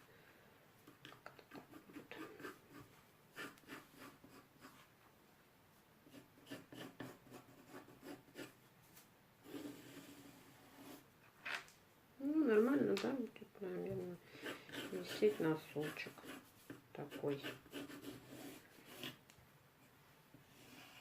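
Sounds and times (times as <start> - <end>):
pencil drawing on paper: 1.5 - 4.9, 6.0 - 8.6, 9.4 - 11.0, 13.9 - 19.2, 20.4 - 21.0.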